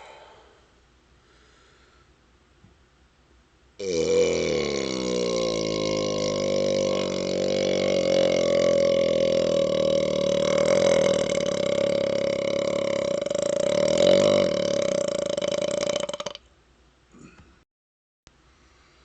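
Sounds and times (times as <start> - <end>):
long loud burp: 3.8 - 16.4.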